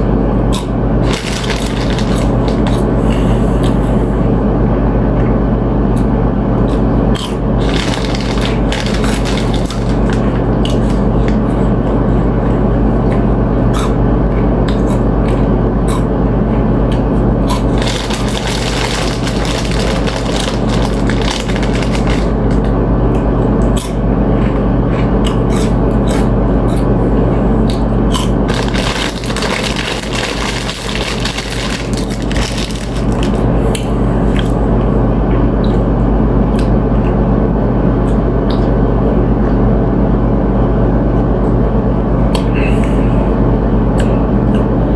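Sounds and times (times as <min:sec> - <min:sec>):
steady low hum: 0:00.0 - 0:44.9
chewing and crunching chips: 0:00.5 - 0:03.8, 0:06.0 - 0:35.9.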